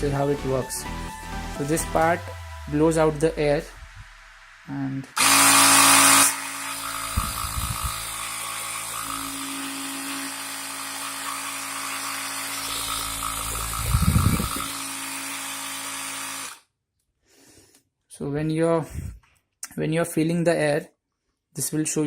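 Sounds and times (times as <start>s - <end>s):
air compressor motor humming: 5.2s - 16.6s.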